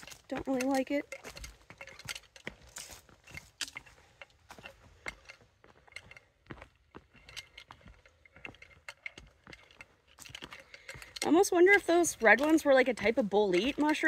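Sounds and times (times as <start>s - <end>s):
carried gear clinking: 0.0s - 14.0s
footsteps on rocky trail: 0.0s - 14.0s.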